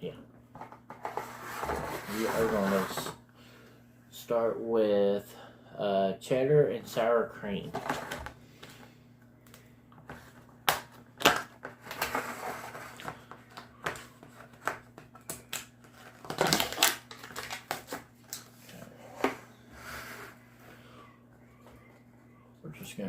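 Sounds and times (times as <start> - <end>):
seal crinkling and tearing: 10.6 - 18.5.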